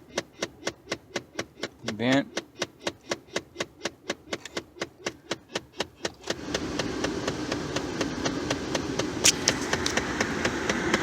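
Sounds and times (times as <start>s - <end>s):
rapid clicking behind dashboard: 0.0s - 11.0s
blower fan rushing: 6.2s - 11.0s.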